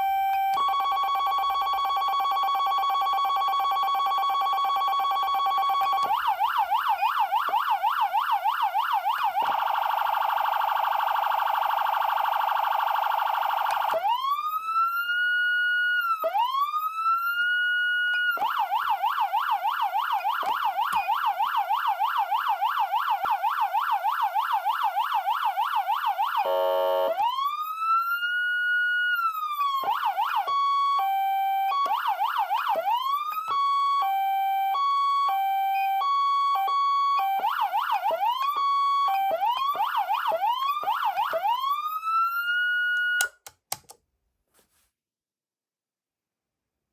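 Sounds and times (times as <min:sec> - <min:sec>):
electronic siren: 0:00.0 - 0:43.3
low horn blast: 0:26.5 - 0:27.2.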